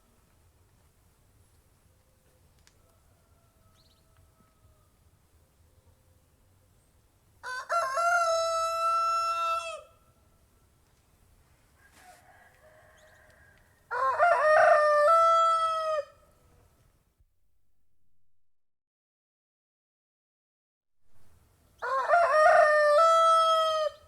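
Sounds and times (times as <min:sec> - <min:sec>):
rooster crowing: 0:02.8 - 0:05.0, 0:07.4 - 0:10.0, 0:11.8 - 0:16.2, 0:21.8 - 0:24.0.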